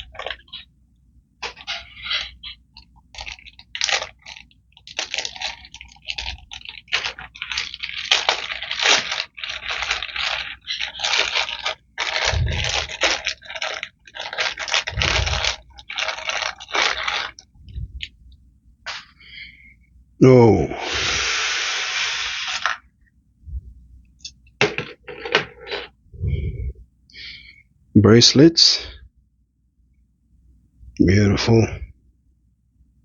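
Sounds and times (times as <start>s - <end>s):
bag crinkling and rustling: 0.0s - 0.7s, 1.4s - 17.9s, 22.2s - 22.8s, 24.6s - 25.9s
dull low thumps: 17.6s - 18.3s, 23.4s - 24.0s.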